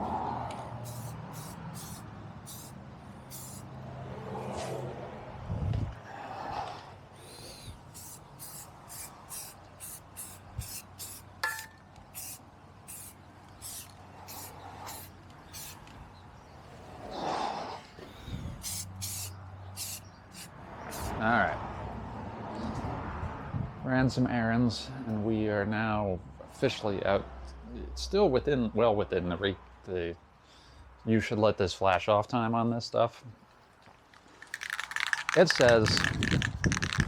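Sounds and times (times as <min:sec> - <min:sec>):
aerosol spray can hissing: 0:00.8 - 0:03.7, 0:07.2 - 0:15.8, 0:18.6 - 0:21.1, 0:34.4 - 0:37.0.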